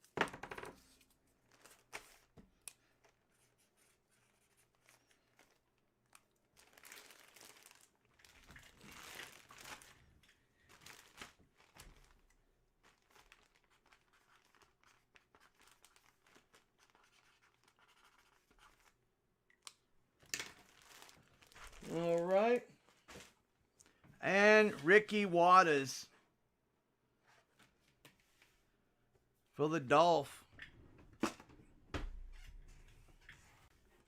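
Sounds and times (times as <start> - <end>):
soft rustling and crinkling: 0.8 - 19.0, 20.2 - 24.1.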